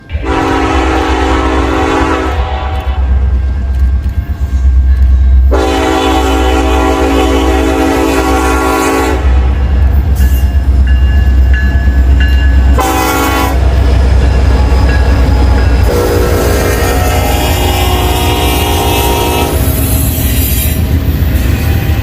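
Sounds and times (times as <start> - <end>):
diesel locomotive rumble: 0.0 - 22.0
train air horn blasts: 0.1 - 3.3, 5.5 - 9.7, 12.7 - 13.7, 15.8 - 20.8.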